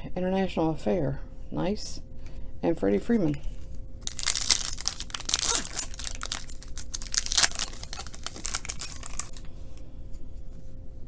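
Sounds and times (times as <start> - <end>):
foil wrapper crinkling and tearing: 3.5 - 9.8.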